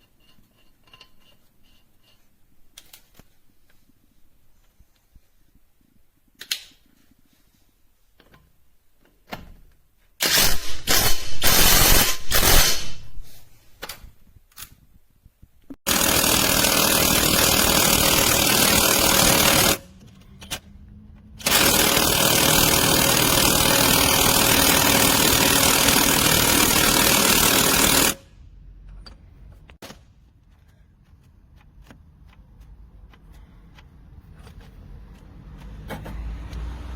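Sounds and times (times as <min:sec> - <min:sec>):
impact wrench hammering: 0:15.9 - 0:19.9, 0:21.4 - 0:28.2.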